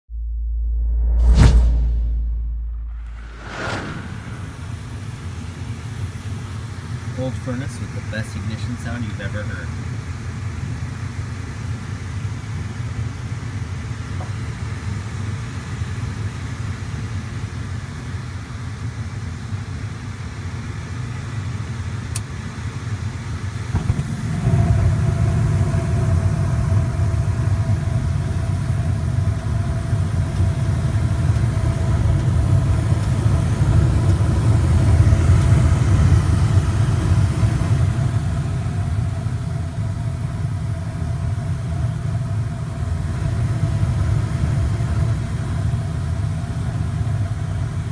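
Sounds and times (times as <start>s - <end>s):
steady tone: 0.1s - 5.8s
burner igniting with low rumble: 0.1s - 17.9s, 21.4s - 47.9s
furnace low hum: 0.1s - 47.9s.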